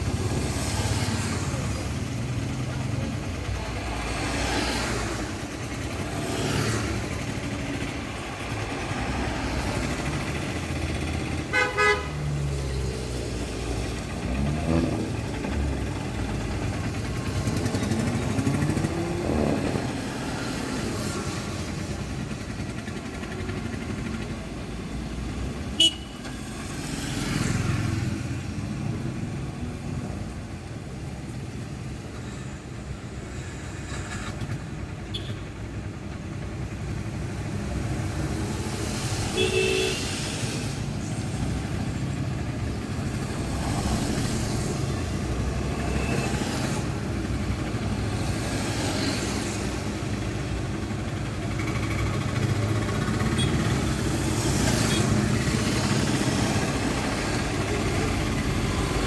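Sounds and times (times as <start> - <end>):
cars and motorcycles passing: 0.0 - 59.0
car horn honk: 11.5 - 12.2, 25.8 - 26.4, 39.4 - 40.0.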